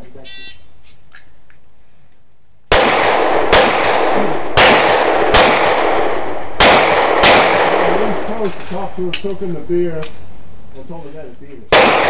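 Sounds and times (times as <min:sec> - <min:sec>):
pistol shots with echo: 0:02.7 - 0:08.7, 0:11.7 - 0:12.0.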